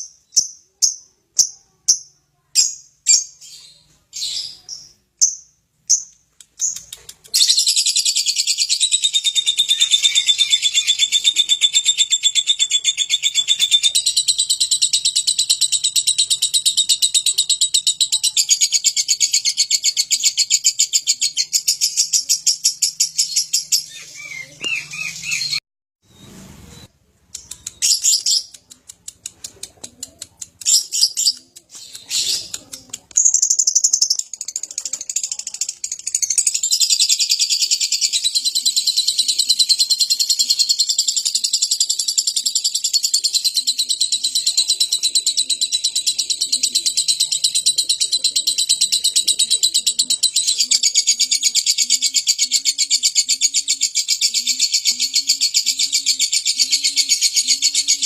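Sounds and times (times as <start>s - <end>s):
lovebird chirping and trilling: 0.0s - 28.7s, 30.6s - 58.0s.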